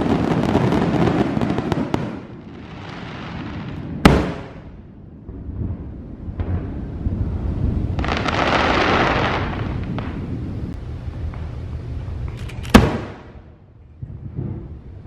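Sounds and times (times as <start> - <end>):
fireworks crackling: 0.0 - 15.0
fireworks rumbling bursts: 0.0 - 15.0
loud firework bang: 4.0 - 4.7, 12.7 - 13.4, 14.0 - 14.8.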